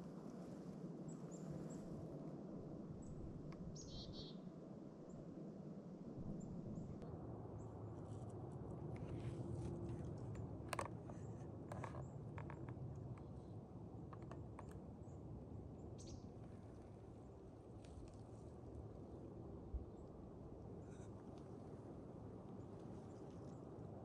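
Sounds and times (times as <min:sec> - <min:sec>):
faint bird chirps: 0:03.0 - 0:04.4, 0:16.0 - 0:16.4
light clicks and crackles: 0:08.0 - 0:14.8, 0:17.8 - 0:18.6.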